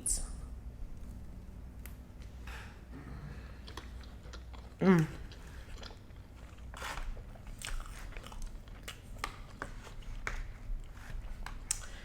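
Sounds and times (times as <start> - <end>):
chewing and biting food: 3.5 - 12.0.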